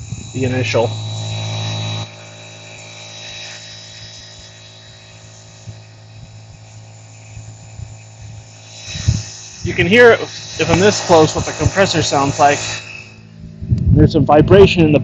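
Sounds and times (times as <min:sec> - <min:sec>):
air compressor running: 0:00.0 - 0:15.0
louder low hum: 0:00.0 - 0:15.0.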